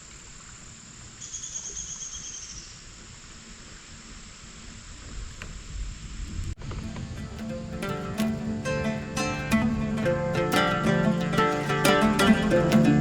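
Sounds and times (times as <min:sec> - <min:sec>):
insect high trill: 0:01.2 - 0:02.8.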